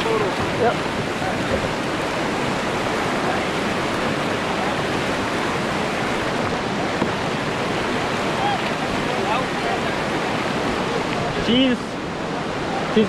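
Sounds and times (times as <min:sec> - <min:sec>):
whitewater rushing: 0:00.0 - 0:13.0.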